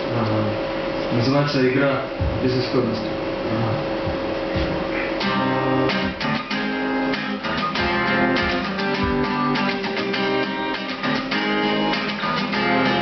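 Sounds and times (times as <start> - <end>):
acoustic guitar strumming chords: 3.9 - 13.0.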